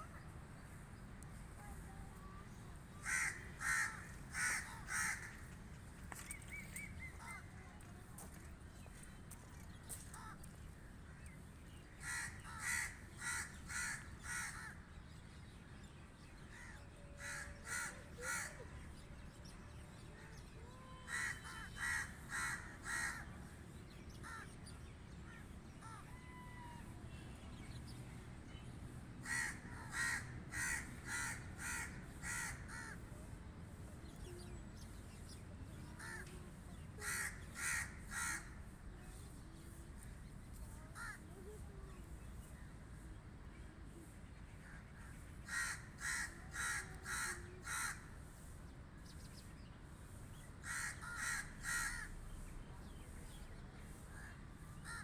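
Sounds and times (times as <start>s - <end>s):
crows cawing: 3.0s - 5.4s, 12.0s - 14.8s, 21.1s - 23.3s, 29.2s - 33.0s, 37.0s - 38.6s, 45.5s - 48.0s, 50.6s - 52.1s.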